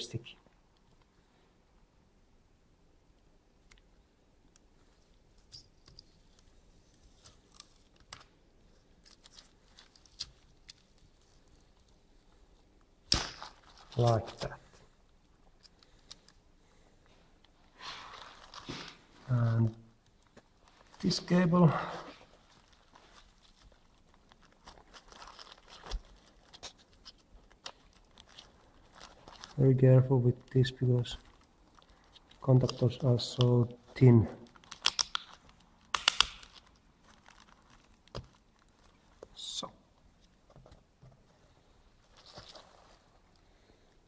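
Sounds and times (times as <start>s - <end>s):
hands clicking and crinkling cable: 0.0s - 1.2s, 3.1s - 44.0s
adhesive tape peeling: 34.5s - 38.4s.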